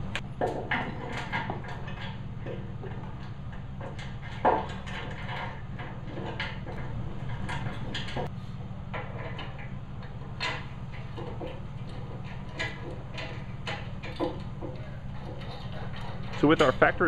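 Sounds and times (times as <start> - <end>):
steady low hum: 0.0 - 17.0
metal parts clinking: 9.0 - 17.0.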